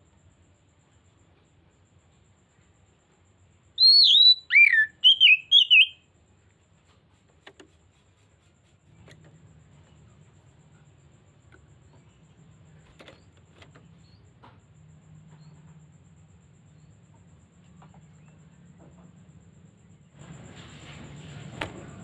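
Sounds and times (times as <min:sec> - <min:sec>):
bird chirps: 0:03.8 - 0:06.1.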